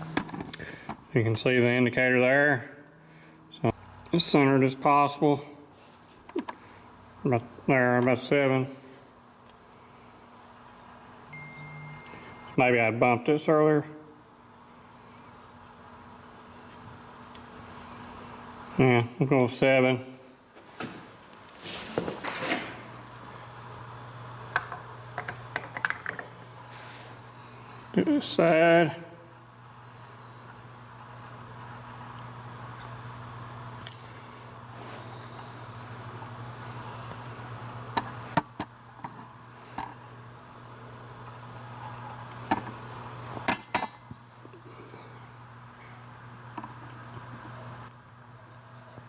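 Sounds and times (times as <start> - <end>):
steady low hum: 0.0 - 49.0.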